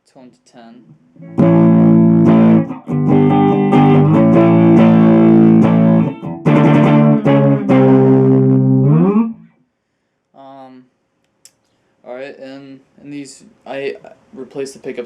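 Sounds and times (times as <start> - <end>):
electric guitar strummed chords: 1.2 - 9.5.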